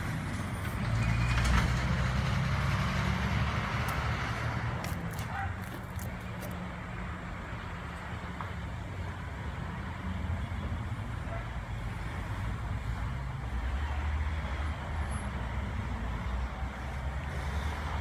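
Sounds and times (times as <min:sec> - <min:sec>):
electric train rumbling: 0:00.0 - 0:05.6.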